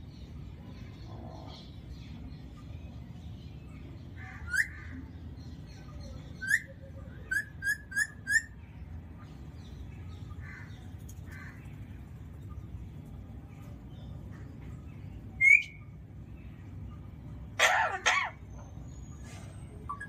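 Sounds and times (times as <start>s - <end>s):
parakeet whistled calls: 7.3s - 8.6s, 15.4s - 15.8s.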